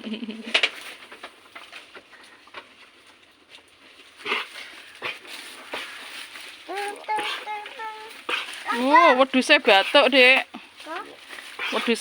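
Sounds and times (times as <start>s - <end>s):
goat coughing: 6.9s - 8.9s.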